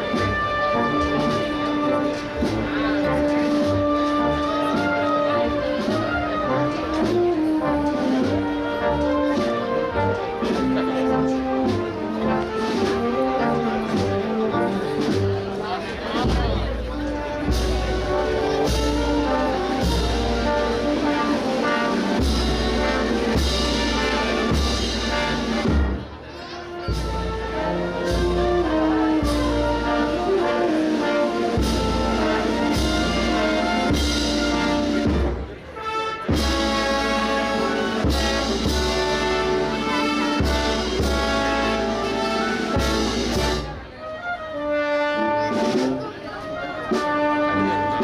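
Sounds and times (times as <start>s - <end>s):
brass band march: 0.0s - 48.0s.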